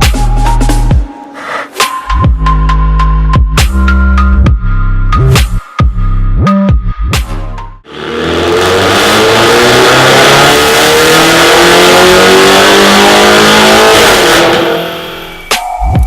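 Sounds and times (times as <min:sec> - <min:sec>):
car engine accelerating hard: 0:07.9 - 0:15.3.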